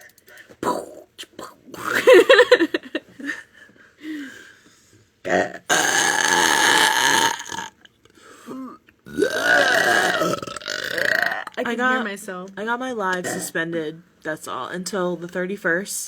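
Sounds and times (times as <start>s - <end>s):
loud belches: 5.2s - 7.9s, 8.6s - 11.6s.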